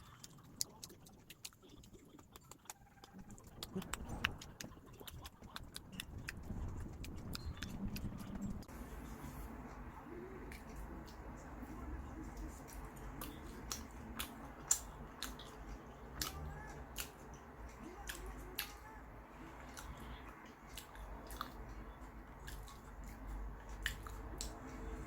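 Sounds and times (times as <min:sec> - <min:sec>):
mouth clicks and smacks: 0:00.0 - 0:08.7, 0:12.3 - 0:18.8
person chewing food: 0:00.0 - 0:25.0
low hum: 0:02.7 - 0:25.0.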